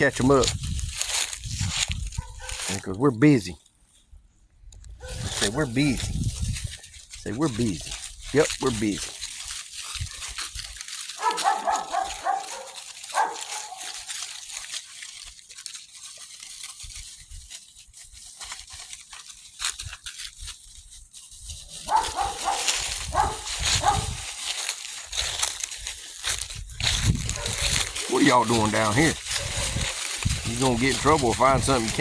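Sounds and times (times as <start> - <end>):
puppies yipping and whimpering: 11.2 - 14.2.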